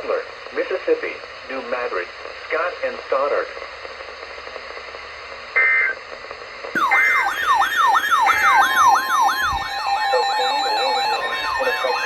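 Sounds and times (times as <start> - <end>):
data tone bursts: 6.8 - 12.0
electronic siren yelping: 6.8 - 12.0.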